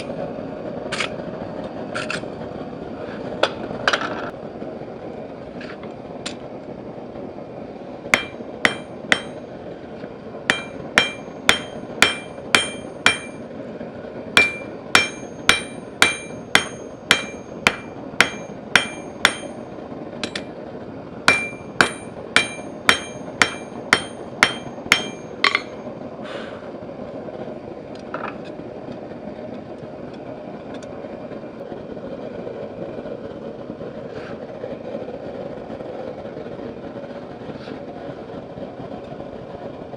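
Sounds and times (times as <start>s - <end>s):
steady low hum: 0.0s - 39.9s
hammer striking steel on anvil: 8.2s - 9.4s, 10.5s - 13.5s, 14.4s - 20.5s, 21.3s - 25.8s.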